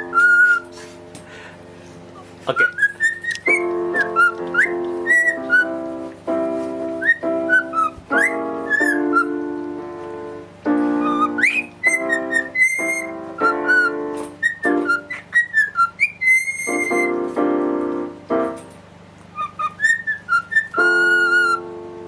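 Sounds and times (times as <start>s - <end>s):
high chirps: 0.0s - 0.8s, 2.5s - 9.7s, 10.7s - 17.4s, 19.3s - 21.8s
parrot whistling: 0.0s - 0.8s, 2.5s - 5.8s, 6.9s - 9.4s, 10.9s - 17.3s, 19.3s - 21.7s
keyboard music with held chords: 0.0s - 16.0s, 16.6s - 22.0s.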